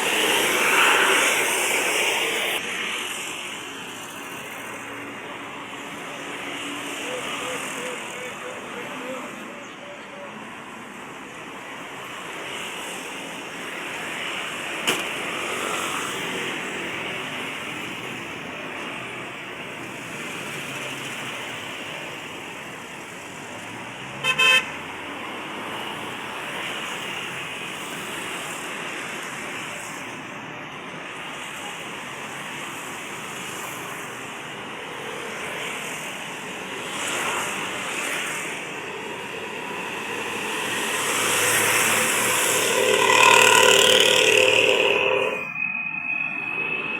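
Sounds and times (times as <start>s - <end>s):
road traffic passing: 0.0s - 46.9s
vehicle horn toot: 24.2s - 24.8s, 42.6s - 45.4s.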